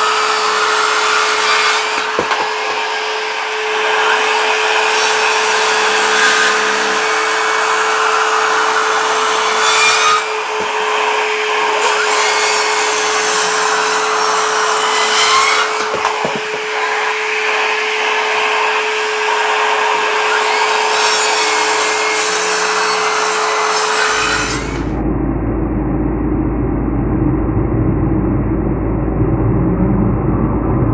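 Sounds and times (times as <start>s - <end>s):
vacuum running: 0.0s - 22.2s
circular saw cutting timber: 0.0s - 25.0s.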